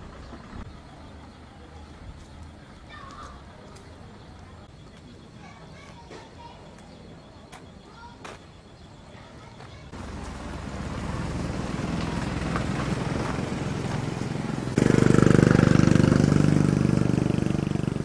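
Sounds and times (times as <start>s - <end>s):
engine running: 9.9s - 18.0s.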